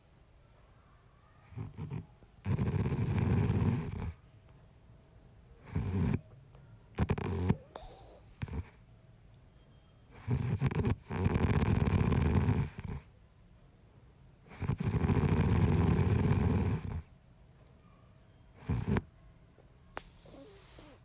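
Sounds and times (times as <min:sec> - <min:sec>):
man snoring: 0:01.8 - 0:04.0, 0:10.3 - 0:13.0, 0:14.6 - 0:17.0.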